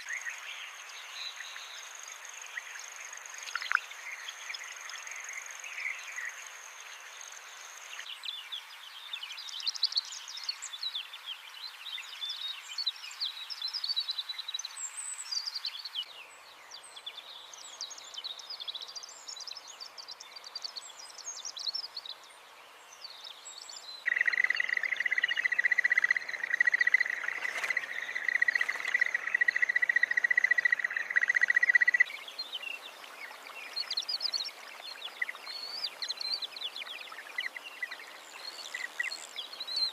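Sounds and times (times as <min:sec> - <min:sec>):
small birds chirping and trilling: 0:00.0 - 0:39.9
insect buzz: 0:24.1 - 0:39.9.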